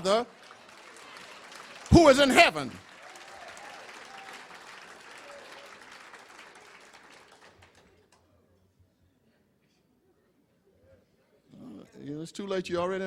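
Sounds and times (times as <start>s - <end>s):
audience applauding: 0.0s - 8.0s.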